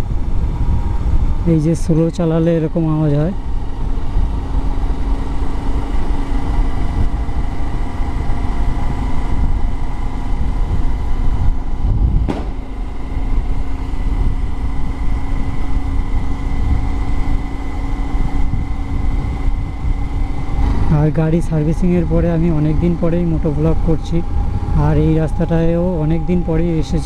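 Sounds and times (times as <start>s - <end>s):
wind rumbling on microphone: 0.0s - 27.0s
motorcycle engine running: 2.2s - 27.0s
sharp knock: 12.3s - 12.7s.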